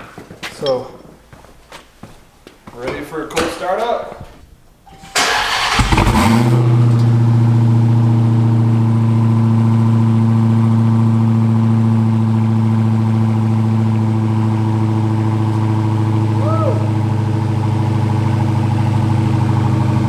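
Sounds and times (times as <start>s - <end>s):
starter cranking: 4.9s - 7.2s
car engine revving and idling: 4.9s - 20.0s.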